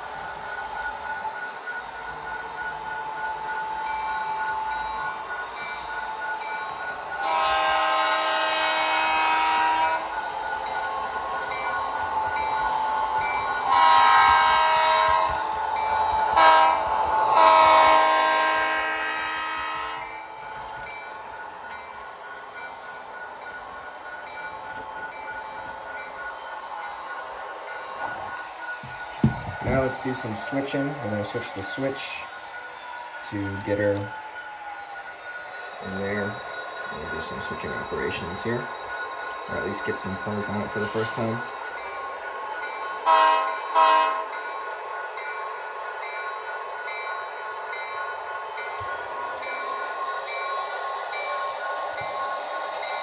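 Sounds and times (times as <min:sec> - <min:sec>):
model train horn from speaker: 0:07.2 - 0:10.1, 0:13.7 - 0:15.4, 0:16.4 - 0:20.1, 0:43.1 - 0:44.3.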